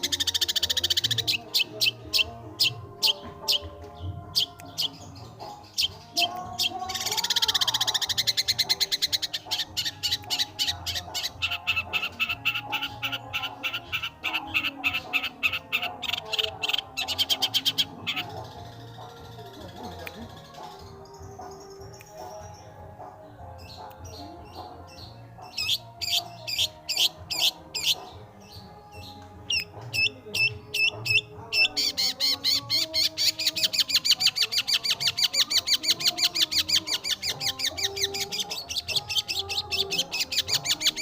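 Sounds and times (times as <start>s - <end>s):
shrike singing fast chattering trills: 29.0s - 41.0s.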